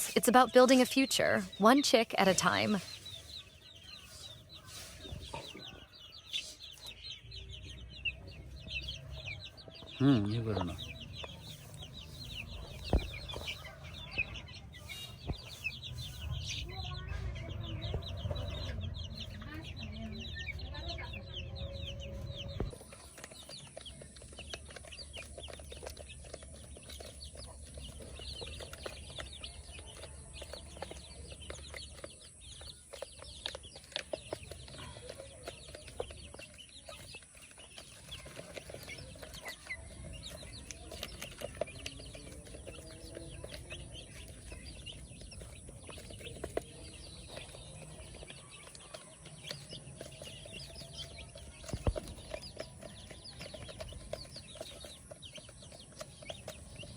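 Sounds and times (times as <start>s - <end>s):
chickens clucking: 0.0s - 56.9s
small clicks and scratches: 22.6s - 56.9s.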